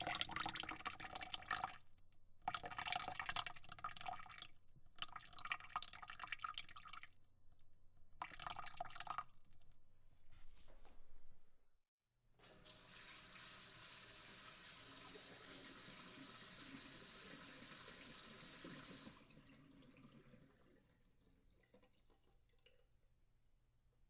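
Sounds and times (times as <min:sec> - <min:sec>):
tap water running into sink: 0:00.0 - 0:01.9, 0:12.4 - 0:22.8
water trickles and drips: 0:00.0 - 0:09.8, 0:12.5 - 0:22.9.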